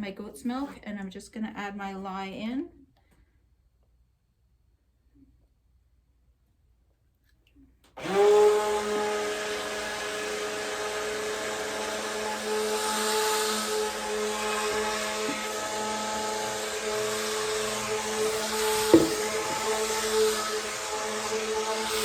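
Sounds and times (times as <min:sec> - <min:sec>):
electric stick blender whining: 0:08.0 - 0:22.0.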